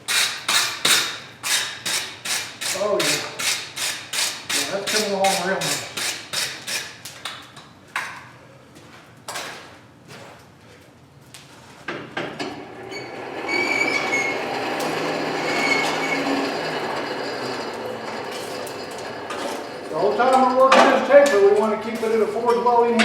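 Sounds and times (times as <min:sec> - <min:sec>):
high squeals: 0:12.8 - 0:20.6.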